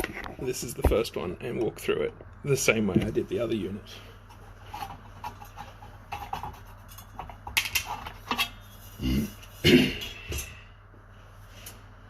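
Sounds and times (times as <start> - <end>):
faint mains hum: 0.0 - 12.0.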